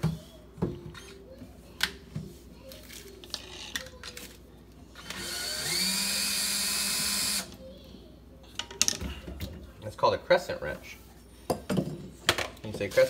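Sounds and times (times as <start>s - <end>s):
power drill running: 5.0s - 7.5s.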